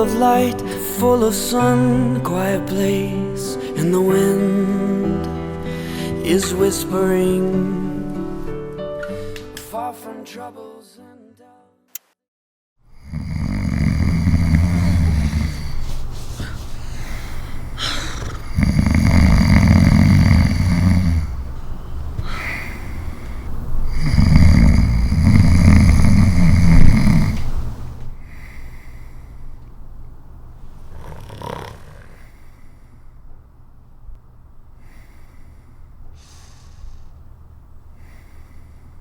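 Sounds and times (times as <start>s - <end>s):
quiet breathing: 5.7s - 6.2s, 12.9s - 33.5s, 34.6s - 39.0s
person snoring loudly: 13.0s - 15.9s, 17.7s - 21.5s, 22.2s - 27.9s, 30.8s - 32.3s.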